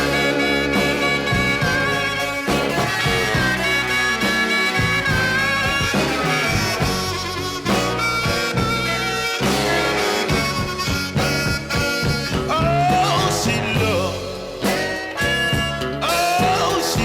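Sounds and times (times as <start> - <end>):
band beat: 0.0 - 17.0
harmonica: 0.0 - 17.0
horn section: 0.0 - 17.0.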